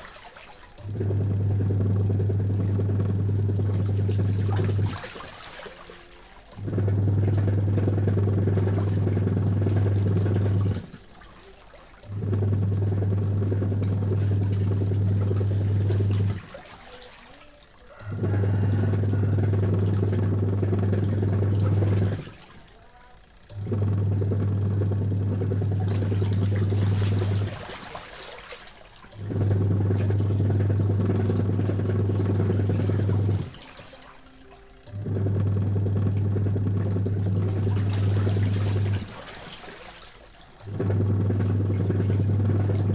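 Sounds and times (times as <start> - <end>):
heavy factory machine humming: 6.2 - 16.5, 18.0 - 22.4, 23.4 - 27.8, 29.1 - 39.3, 40.3 - 42.9.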